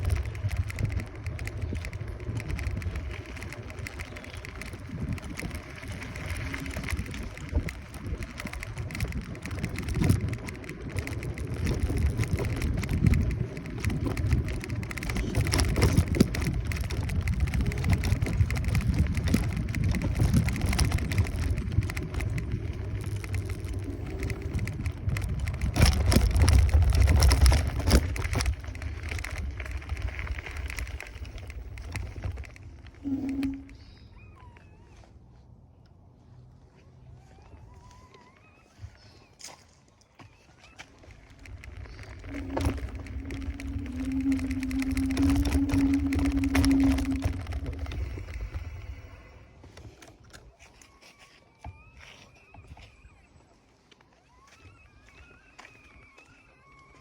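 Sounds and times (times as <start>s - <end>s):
wind buffeting microphone: 0.0s - 35.0s, 41.0s - 50.6s
scooter road rumble: 0.0s - 57.0s.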